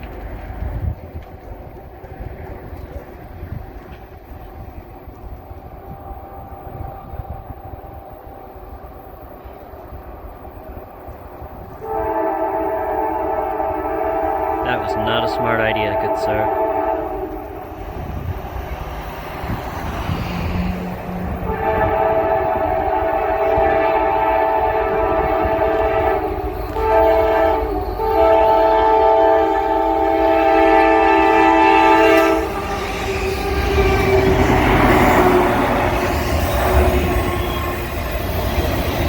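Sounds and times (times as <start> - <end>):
diesel locomotive rumble: 0.0 - 39.0
train wheels on rail: 0.0 - 39.0
locomotive air horn blasts: 11.8 - 17.5, 20.7 - 37.6.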